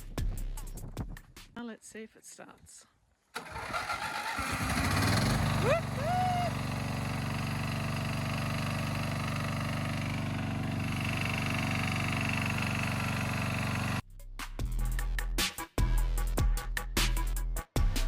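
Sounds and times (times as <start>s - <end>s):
mower engine idling: 3.4s - 14.0s.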